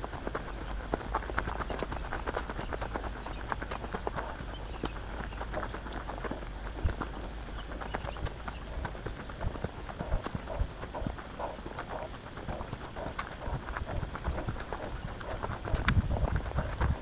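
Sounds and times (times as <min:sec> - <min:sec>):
footsteps on a bush track: 0:00.0 - 0:17.0.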